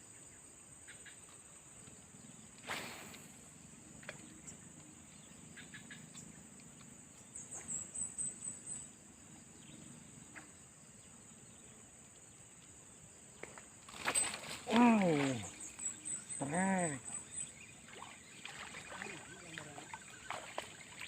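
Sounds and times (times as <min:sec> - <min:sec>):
insects trilling: 0:00.0 - 0:21.0
sharp insect chirps: 0:09.6 - 0:21.0.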